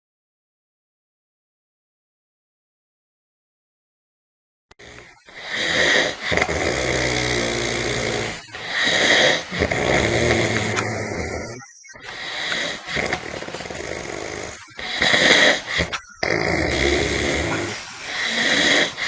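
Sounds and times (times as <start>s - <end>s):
man snoring loudly: 4.7s - 19.0s.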